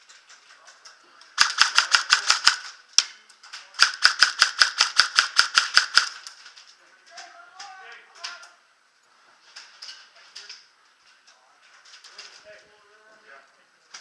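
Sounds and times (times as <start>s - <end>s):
airsoft gun firing: 1.4s - 2.7s, 3.8s - 6.3s.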